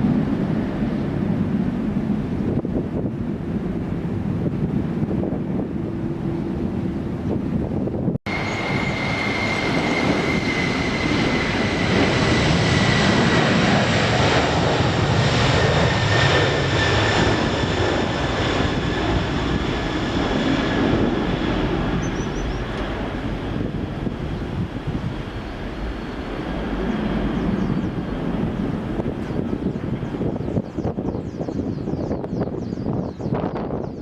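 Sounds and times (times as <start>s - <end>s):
jet engines whining and roaring: 0.0s - 34.0s.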